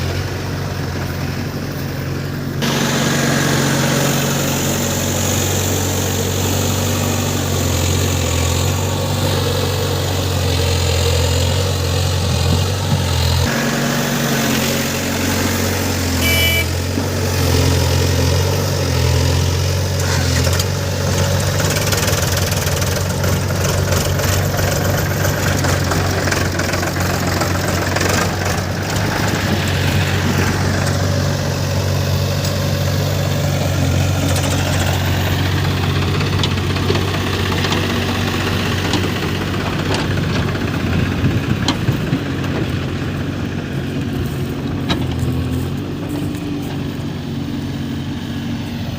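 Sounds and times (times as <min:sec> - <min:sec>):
heavy diesel engine humming: 0:00.0 - 0:48.9
light machinery clatter: 0:19.9 - 0:31.3, 0:32.2 - 0:47.2.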